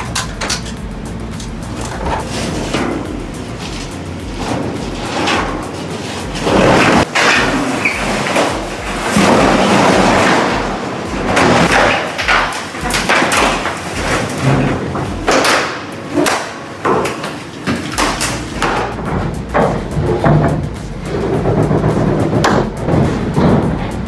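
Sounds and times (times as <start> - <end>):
low pulsing: 0.0 - 15.6, 17.9 - 24.0
loud crashing thuds: 0.0 - 15.8.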